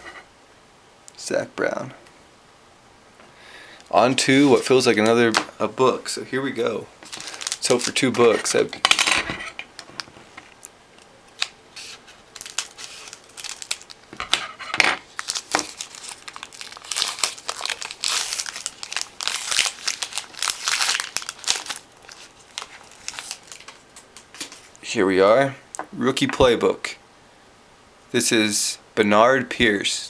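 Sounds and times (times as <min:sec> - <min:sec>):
plastic wrapping crinkling and tearing: 0:04.0 - 0:05.5, 0:07.0 - 0:08.7, 0:11.3 - 0:24.8.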